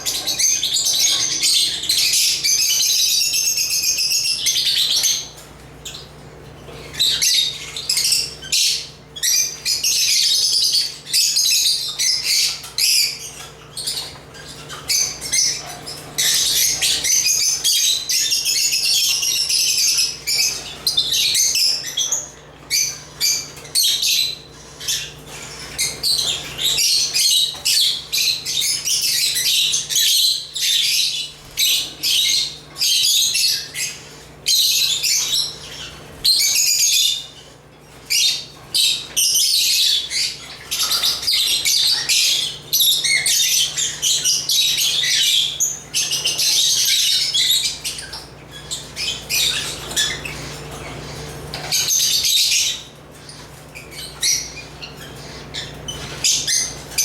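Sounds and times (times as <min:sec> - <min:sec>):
birds chirping and squawking: 0:00.0 - 0:57.0.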